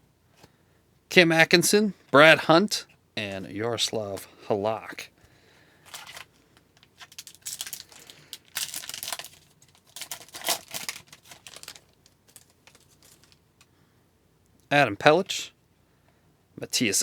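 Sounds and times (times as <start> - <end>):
foil wrapper crinkling and tearing: 5.9 - 13.4.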